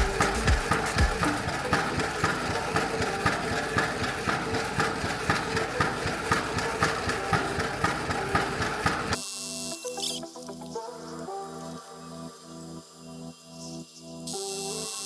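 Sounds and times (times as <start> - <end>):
mixer machine humming and ticking: 0.0 - 9.3.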